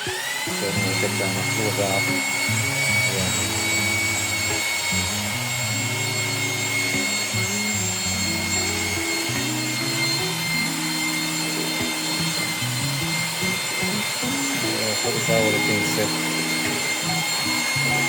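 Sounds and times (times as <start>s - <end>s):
faint high whine: 0.0s - 18.0s
background music of low notes: 0.4s - 18.0s.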